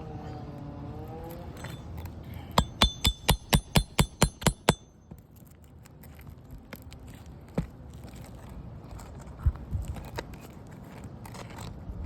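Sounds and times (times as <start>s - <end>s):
hammer striking metal nail puller: 1.6s - 5.0s.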